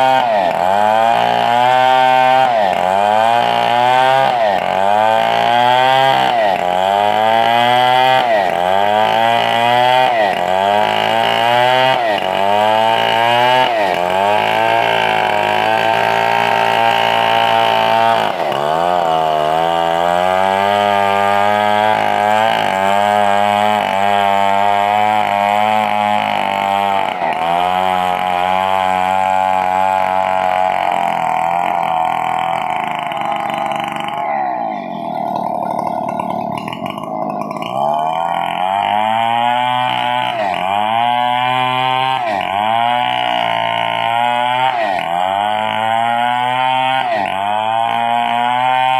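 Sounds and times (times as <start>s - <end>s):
chainsaw cutting log: 0.0s - 48.9s.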